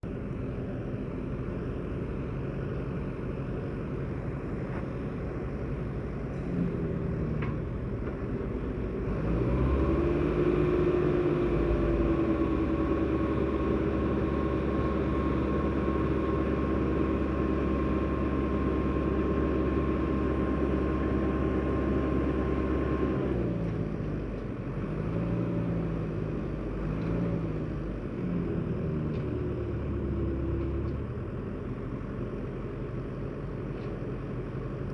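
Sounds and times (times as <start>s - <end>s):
truck engine running with whine: 0.0s - 34.9s.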